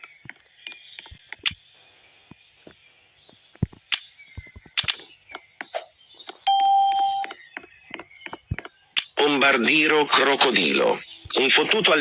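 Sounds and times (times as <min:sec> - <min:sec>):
electronic beep: 0:06.4 - 0:07.4.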